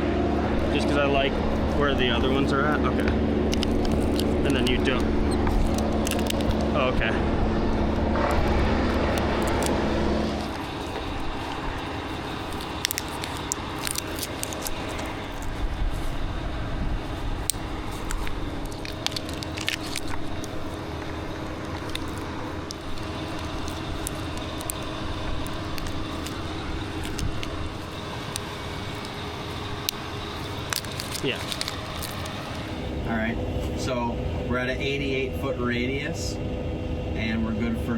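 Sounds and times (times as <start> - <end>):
engine idling: 0.0 - 37.9
light clicks and crackles: 17.4 - 32.7.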